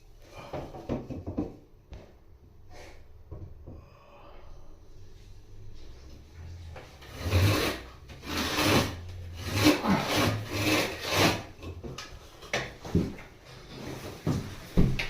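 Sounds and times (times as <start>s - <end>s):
handsaw cutting wood: 7.0s - 11.8s.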